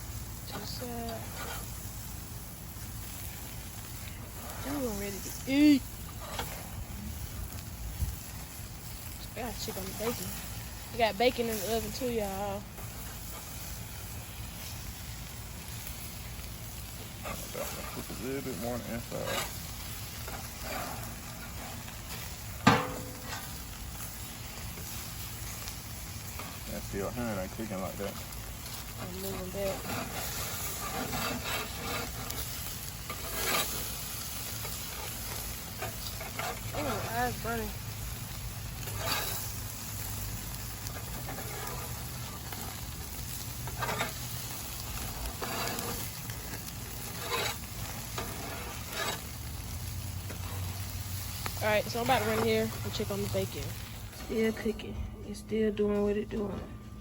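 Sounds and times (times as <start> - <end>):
chicken sizzling on grill: 0.0 - 56.2
sharp metal clank: 22.6 - 23.5.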